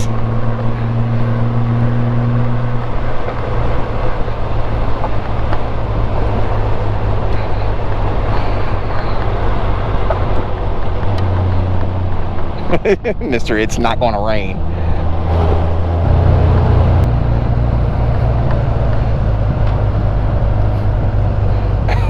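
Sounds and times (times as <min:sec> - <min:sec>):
wind and road noise: 0:00.0 - 0:22.0
motorcycle engine running: 0:15.9 - 0:22.0.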